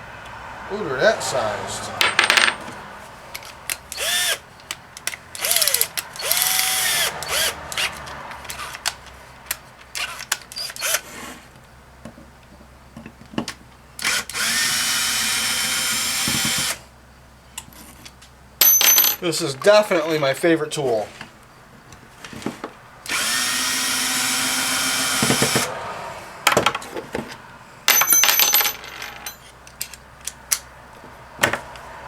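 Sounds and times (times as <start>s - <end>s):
cordless drill driving screws: 3.9s - 4.4s, 5.4s - 8.8s, 10.0s - 11.3s, 14.0s - 16.8s, 23.1s - 25.7s.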